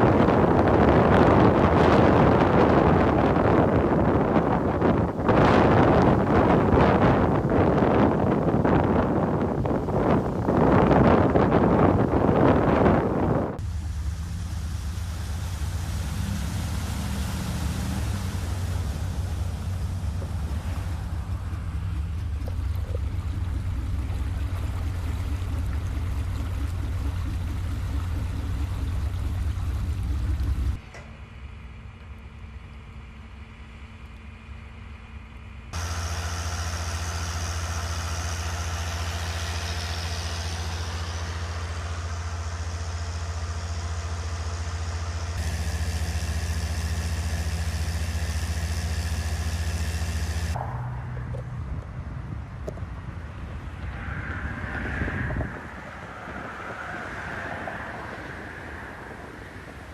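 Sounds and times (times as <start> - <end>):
heavy low storm rumble: 0.0 - 30.8, 50.4 - 59.9.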